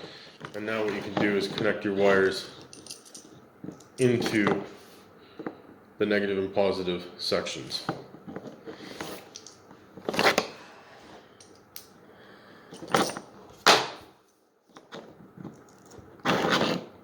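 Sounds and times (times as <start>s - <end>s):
small parts rustling and clicking: 2.4s - 4.6s, 7.7s - 10.4s, 12.7s - 13.6s, 14.3s - 16.8s.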